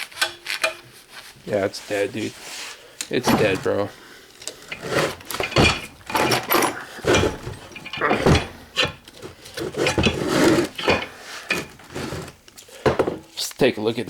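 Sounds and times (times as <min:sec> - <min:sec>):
metal ratchet clunks and clicks: 0:03.3 - 0:13.2.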